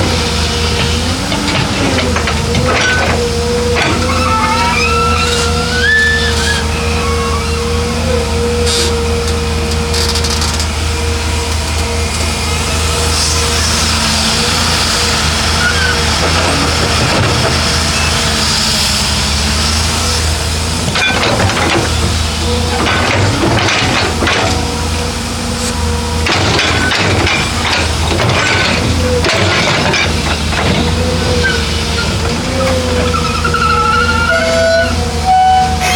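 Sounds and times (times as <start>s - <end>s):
constant machine whine: 0.0s - 35.9s
heavy machinery diesel drone: 0.0s - 35.9s
metal clanks: 20.8s - 24.8s, 26.2s - 35.0s.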